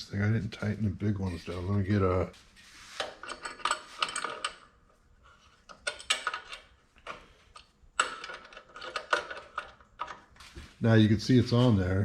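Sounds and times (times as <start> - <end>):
metal tools clinking and clattering: 3.0 - 4.8, 5.6 - 10.3.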